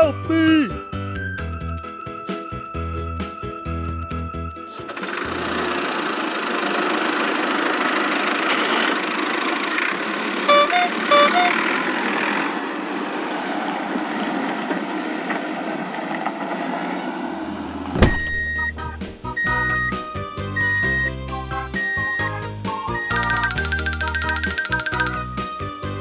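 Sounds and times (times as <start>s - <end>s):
cartoon vehicle engine running: 10.5s - 11.6s, 23.1s - 25.2s
two-note horn toots: 10.5s - 11.6s.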